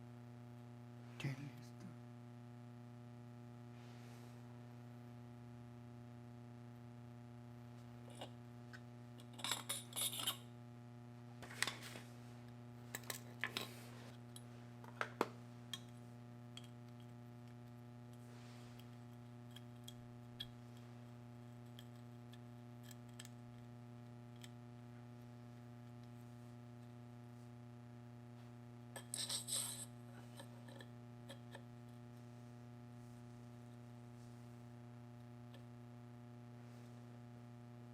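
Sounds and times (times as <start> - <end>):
steady low hum: 0.0 - 37.9
small metal parts clinking: 9.2 - 10.4, 29.0 - 31.6.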